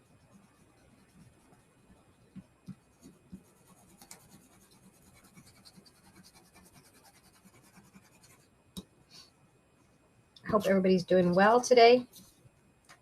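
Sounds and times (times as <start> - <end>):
fine scratching on paper: 0.0 - 8.5.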